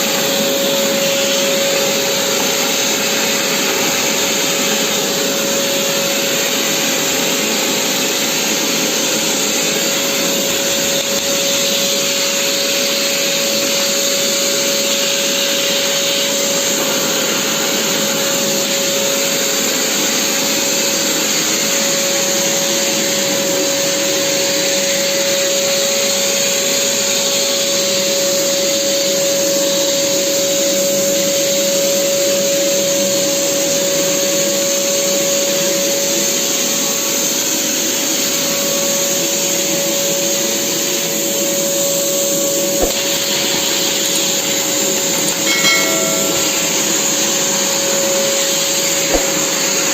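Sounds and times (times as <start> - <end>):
vacuum cleaner running: 0.0 - 49.9.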